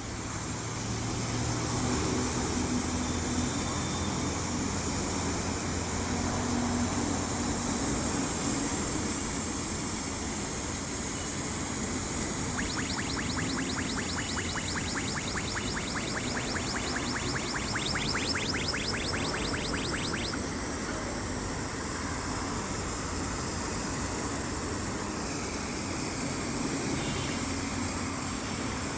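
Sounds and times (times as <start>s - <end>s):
fast regular ticking: 12.6s - 20.4s.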